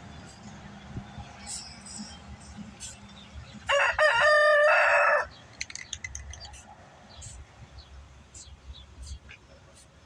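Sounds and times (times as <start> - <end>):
rooster crowing: 3.7 - 5.3.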